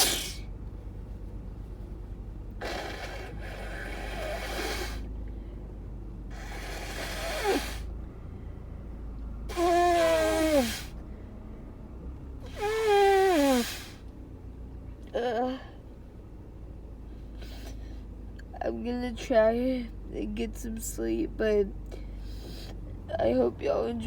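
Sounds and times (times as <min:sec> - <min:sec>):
woman sneezing: 0:00.0 - 0:00.4, 0:12.5 - 0:14.0.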